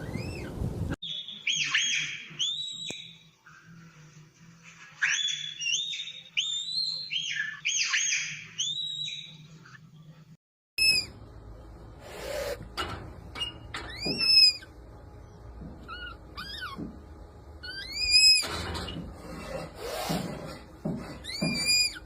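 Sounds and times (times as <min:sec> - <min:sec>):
red panda squealing: 0:05.0 - 0:09.0, 0:10.8 - 0:11.1, 0:15.9 - 0:16.8, 0:17.6 - 0:18.4, 0:21.2 - 0:22.0.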